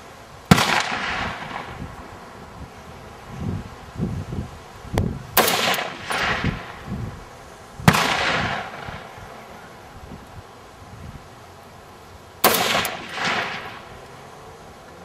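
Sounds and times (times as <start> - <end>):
rifle shots with rolling echo: 0.5 - 1.9, 5.4 - 6.9, 7.9 - 9.6, 12.4 - 13.9.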